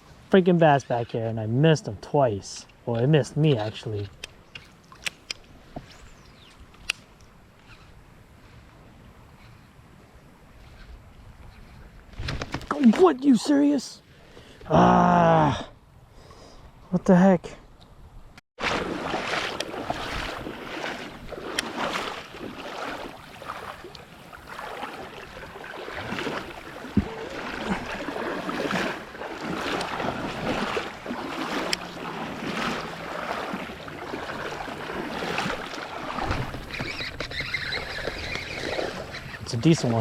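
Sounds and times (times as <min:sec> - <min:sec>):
river water rushing: 0:18.6 - 0:39.2
wind buffeting microphone: 0:19.4 - 0:40.0.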